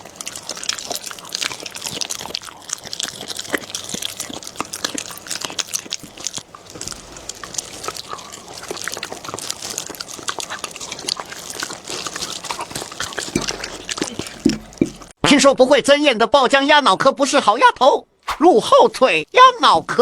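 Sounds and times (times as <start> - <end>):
dog crunching food: 0.0 - 15.2.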